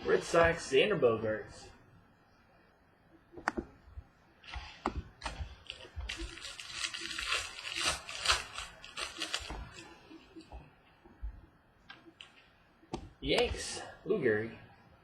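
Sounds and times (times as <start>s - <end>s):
plastic packaging crinkling: 5.3s - 10.5s.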